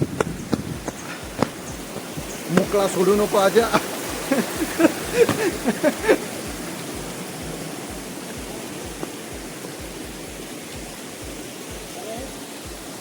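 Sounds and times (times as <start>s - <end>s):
waterfall rushing: 0.0s - 13.0s
person's voice: 2.4s - 6.3s, 11.7s - 12.4s.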